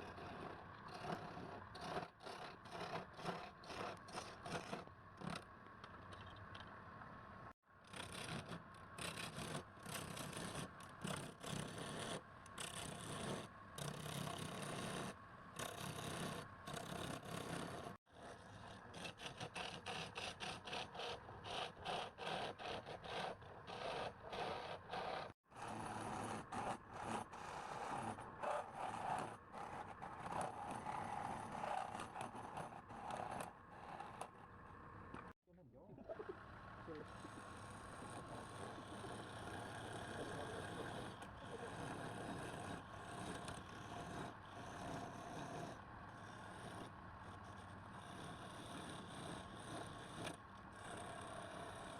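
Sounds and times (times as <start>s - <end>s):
tool scraping spinning wood: 0.0s - 5.5s, 7.9s - 35.3s, 37.0s - 51.9s.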